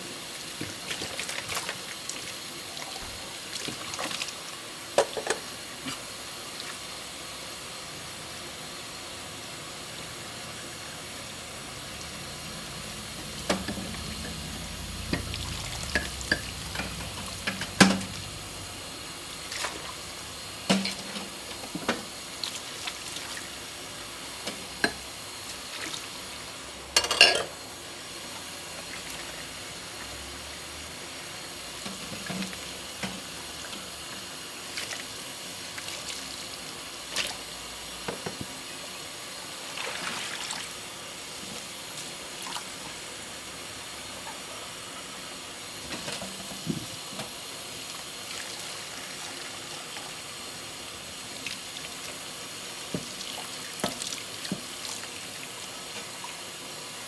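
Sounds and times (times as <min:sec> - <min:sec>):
water running in sink: 0:00.0 - 0:57.0
dishes clinking and knocking: 0:13.4 - 0:14.5, 0:15.1 - 0:18.3, 0:27.0 - 0:27.5.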